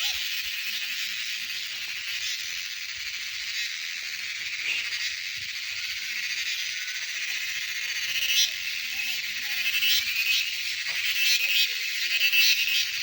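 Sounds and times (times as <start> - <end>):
insects buzzing and trilling: 0.0 - 13.0.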